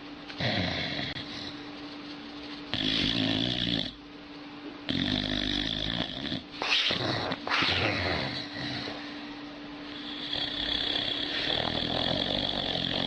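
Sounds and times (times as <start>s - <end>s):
dog snoring: 0.4s - 1.6s, 2.7s - 4.0s, 4.9s - 9.1s, 9.9s - 13.0s.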